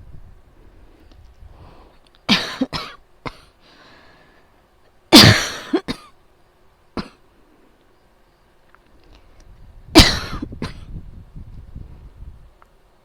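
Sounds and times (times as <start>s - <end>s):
person coughing harshly: 2.3s - 3.5s, 5.1s - 6.1s, 7.0s - 7.2s, 10.0s - 10.9s.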